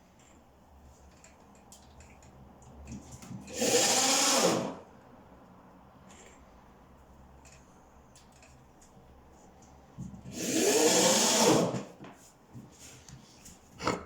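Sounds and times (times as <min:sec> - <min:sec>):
power drill driving screw: 0:03.5 - 0:04.8, 0:10.3 - 0:11.8.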